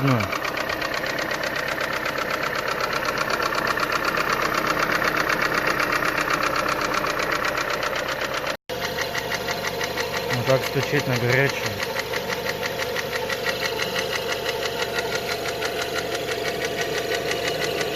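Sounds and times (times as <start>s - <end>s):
car engine idling with knocking: 0.0s - 17.9s.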